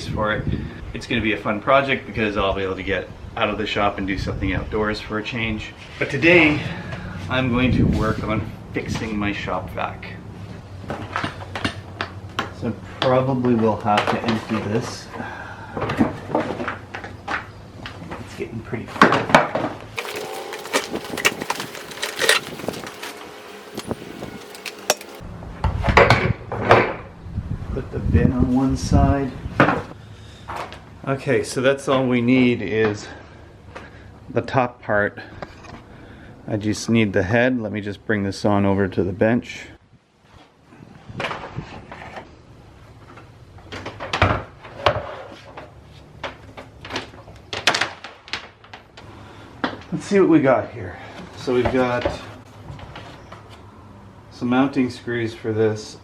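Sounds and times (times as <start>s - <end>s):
shop vac plastic clatter: 20.0s - 25.2s
vacuum head knocks and rattles: 20.0s - 25.2s.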